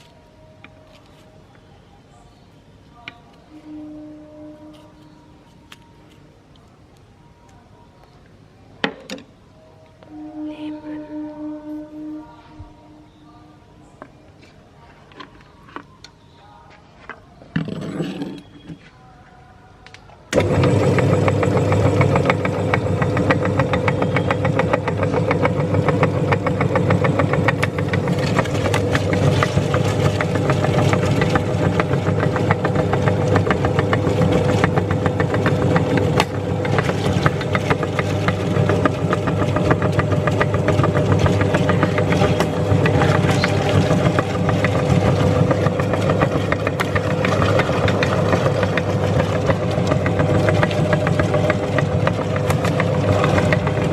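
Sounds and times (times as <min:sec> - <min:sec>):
lemon crackling in grinder: 0:20.3 - 0:53.9
electric meat grinder motor: 0:20.4 - 0:53.9.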